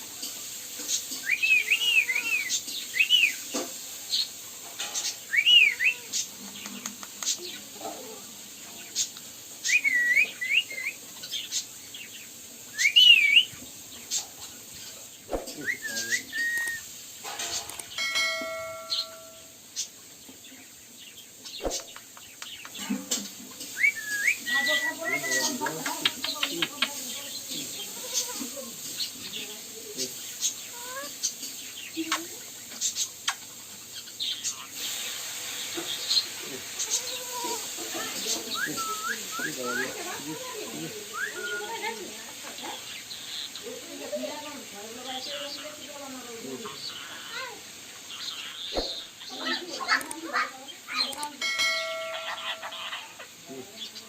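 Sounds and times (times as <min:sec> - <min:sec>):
steady hiss: 0:00.0 - 0:54.0
parrots chirping: 0:00.2 - 0:54.0
parakeet whistling: 0:01.2 - 0:03.4, 0:15.6 - 0:16.8, 0:23.8 - 0:25.6, 0:38.5 - 0:40.0, 0:41.1 - 0:41.9.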